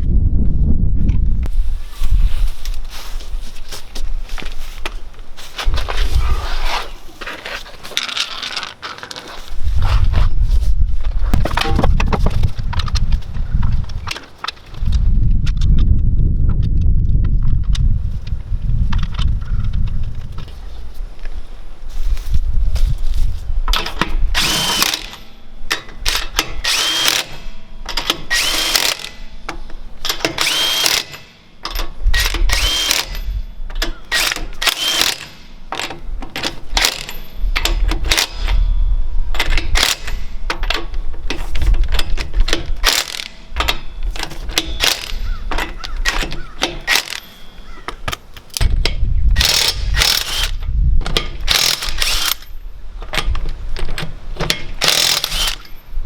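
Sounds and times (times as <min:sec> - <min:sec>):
impact wrench hammering: 0:23.8 - 0:38.7, 0:39.4 - 0:48.8, 0:49.4 - 0:52.5, 0:54.4 - 0:55.8.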